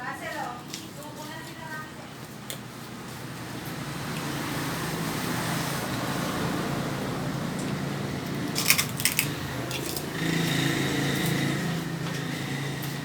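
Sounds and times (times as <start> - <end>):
tableware clinking: 8.6 - 10.1.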